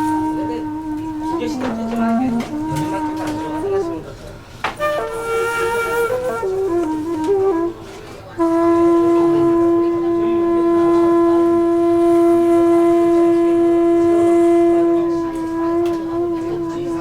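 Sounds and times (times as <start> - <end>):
woodwind instrument playing: 0.0 - 17.0.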